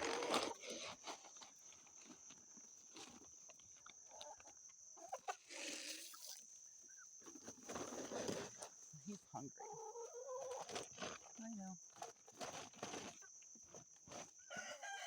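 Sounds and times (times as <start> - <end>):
chickens clucking: 4.0 - 8.0, 9.4 - 10.8.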